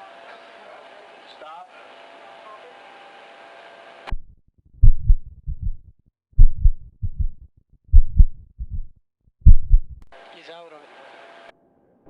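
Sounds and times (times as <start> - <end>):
heartbeat thumps: 4.1 - 10.0.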